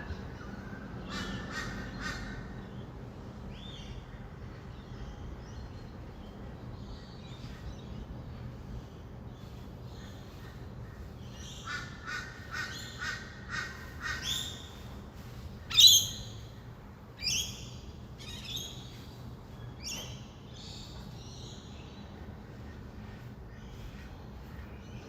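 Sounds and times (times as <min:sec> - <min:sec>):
distant traffic hum: 0:00.0 - 0:25.0
lorikeets calling: 0:11.3 - 0:14.8, 0:15.6 - 0:16.6, 0:17.2 - 0:19.2.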